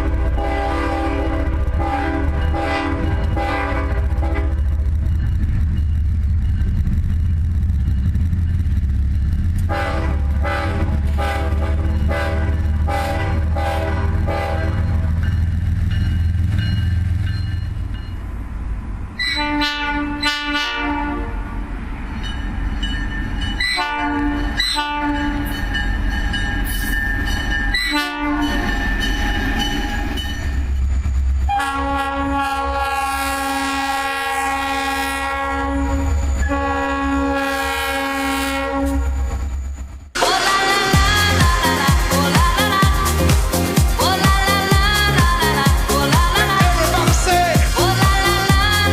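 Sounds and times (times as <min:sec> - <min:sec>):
locomotive air horn blasts: 0:00.0 - 0:04.7, 0:09.6 - 0:15.2, 0:19.2 - 0:21.6, 0:23.6 - 0:25.5, 0:27.8 - 0:28.7, 0:31.5 - 0:39.3
low locomotive rumble: 0:00.0 - 0:48.9.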